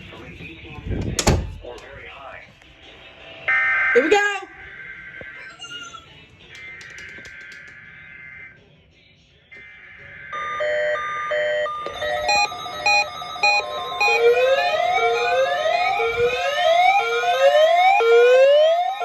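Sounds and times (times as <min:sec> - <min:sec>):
steady warning alarm tone: 0:09.6 - 0:19.0
electronic on-off beeps: 0:10.3 - 0:14.4.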